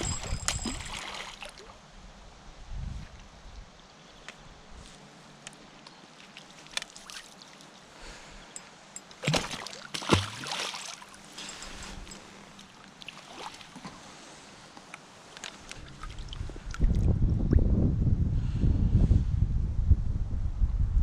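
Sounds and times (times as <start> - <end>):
sharp knocks and splashes: 0.0 - 1.7, 9.0 - 14.0
water lapping and trickling: 0.0 - 1.9, 5.4 - 17.2.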